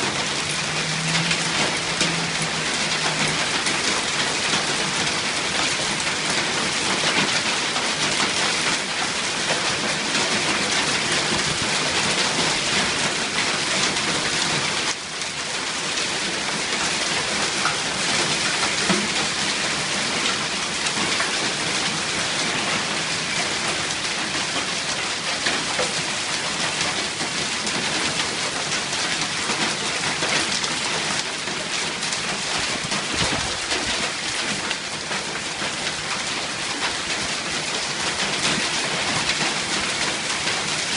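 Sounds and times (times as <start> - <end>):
hail and rain pelting down: 0.0 - 40.9.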